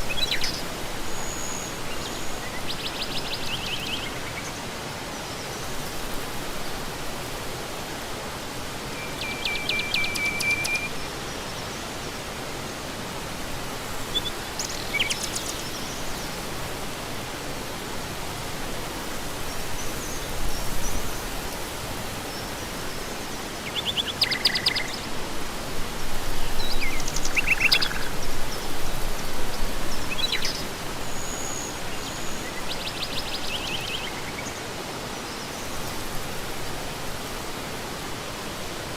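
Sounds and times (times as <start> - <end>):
birds chirping: 9.0 - 11.0.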